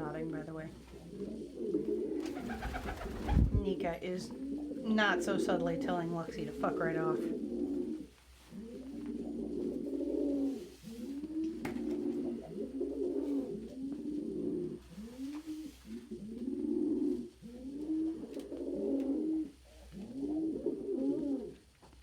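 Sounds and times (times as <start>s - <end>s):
pigeons cooing: 0.0s - 21.7s.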